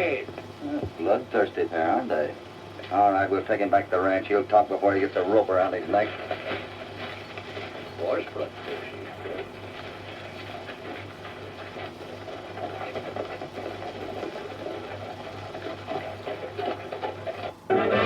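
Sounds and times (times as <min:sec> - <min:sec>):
steady low hum: 0:00.0 - 0:18.0
horses' hoofbeats clattering: 0:05.3 - 0:17.7.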